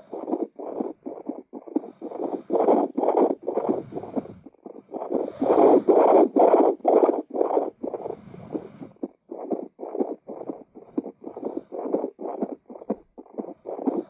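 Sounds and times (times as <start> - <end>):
whooshing heartbeat pulses: 0.0 - 14.0.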